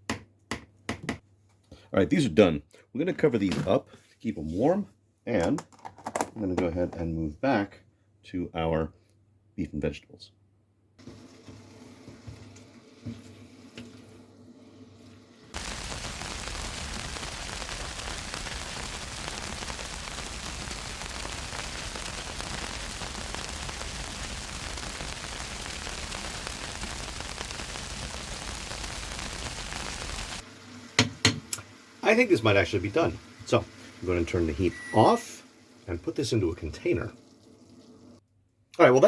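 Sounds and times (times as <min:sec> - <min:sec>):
food sizzling in a frying pan: 0:15.5 - 0:38.2.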